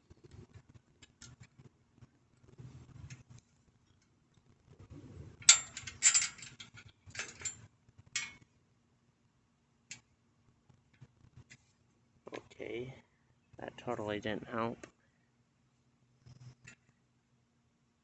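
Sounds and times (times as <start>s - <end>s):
bicycle chain clattering: 5.4s - 7.6s.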